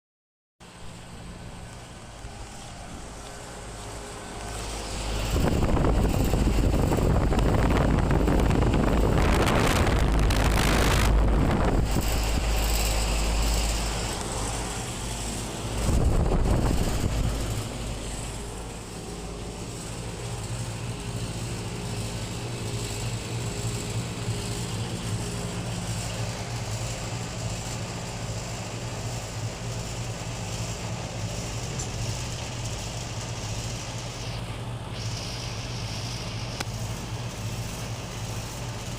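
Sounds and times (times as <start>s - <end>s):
hvac units humming: 0.6s - 38.9s
wind rushing on microphone: 4.5s - 19.0s.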